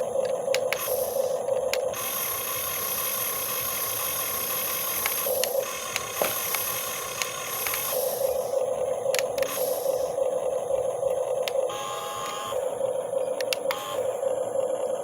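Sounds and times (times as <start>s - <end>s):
electric motors whirring: 0.0s - 15.0s
sharp clicks: 0.2s - 0.9s, 5.0s - 7.9s, 9.1s - 9.6s, 11.4s - 12.4s, 13.4s - 13.8s.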